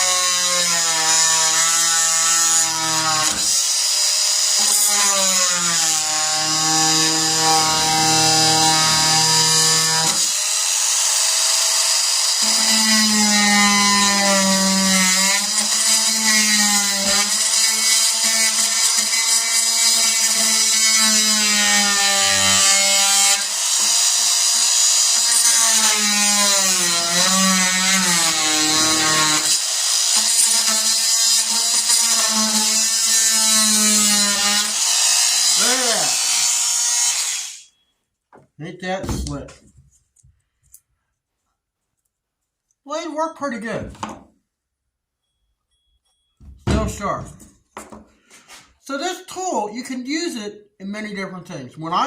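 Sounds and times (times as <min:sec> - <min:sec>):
oscillating multi-tool cutting wood: 0:00.0 - 0:37.8.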